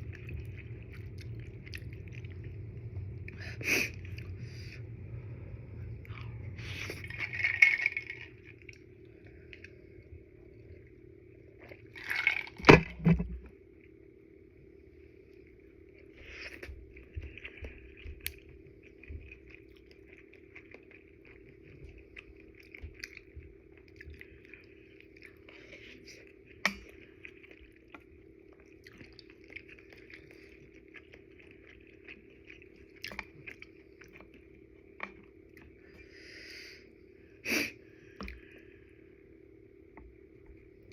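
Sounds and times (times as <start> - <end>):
faint steady hum: 0.0 - 40.9
wet chewing mouth sounds: 16.2 - 35.8.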